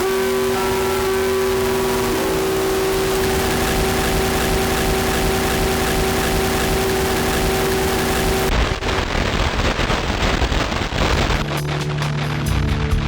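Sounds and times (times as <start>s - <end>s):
experimental ambient music: 0.0s - 8.5s, 11.4s - 13.0s.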